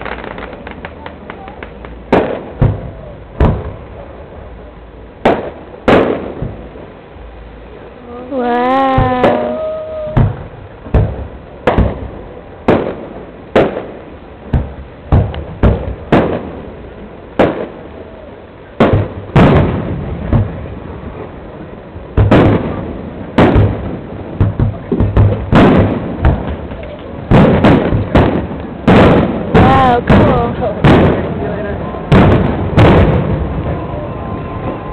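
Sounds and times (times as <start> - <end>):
fireworks shells bursting: 0.0 - 3.8, 8.8 - 16.7.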